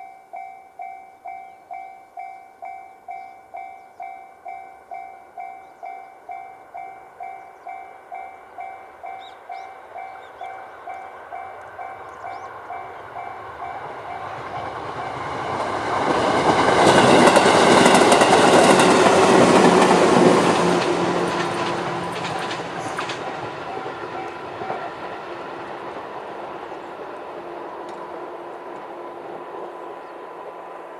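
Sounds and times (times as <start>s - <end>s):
electric train running: 3.6s - 30.9s
wheels clicking over rail joints: 8.6s - 28.9s.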